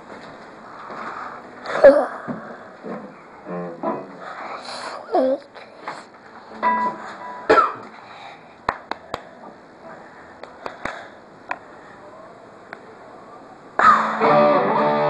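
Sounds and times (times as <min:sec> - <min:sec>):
faint background noise: 0:00.0 - 0:15.0.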